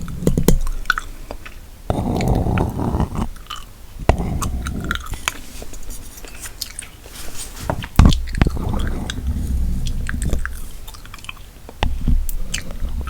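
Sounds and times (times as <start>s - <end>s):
gum chewing: 0.0s - 5.4s, 7.9s - 11.4s.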